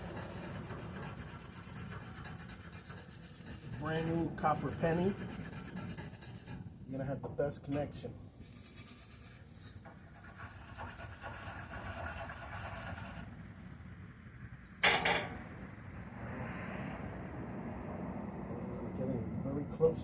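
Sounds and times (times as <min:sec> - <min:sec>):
abrasive scrubbing on metal: 0:00.0 - 0:07.1, 0:08.4 - 0:13.2.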